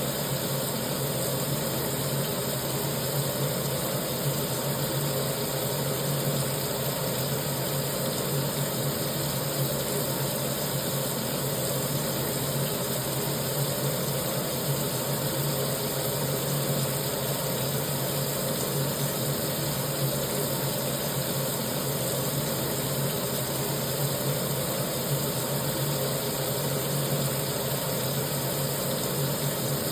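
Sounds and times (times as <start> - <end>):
tap water running: 0.0 - 29.9.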